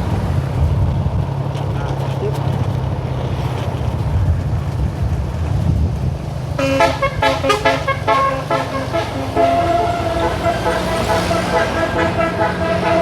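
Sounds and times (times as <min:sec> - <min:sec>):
vehicle engine rumble: 0:00.0 - 0:13.0
multi-tone bus horn tune: 0:06.6 - 0:13.0.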